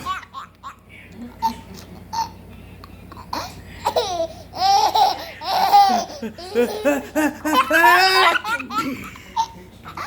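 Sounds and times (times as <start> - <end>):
baby laughing: 3.1 - 10.0.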